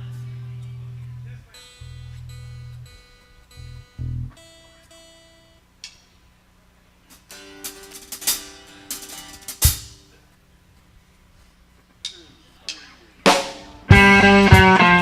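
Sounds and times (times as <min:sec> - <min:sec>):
loose guitar notes: 0:00.0 - 0:06.0, 0:13.2 - 0:15.0
cymbal and hi-hat strikes: 0:07.1 - 0:10.1, 0:12.0 - 0:15.0.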